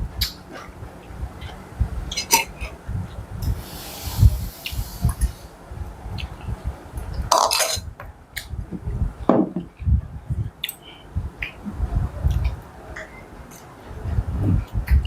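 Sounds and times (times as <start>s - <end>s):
short noisy bursts: 0.0s - 7.9s.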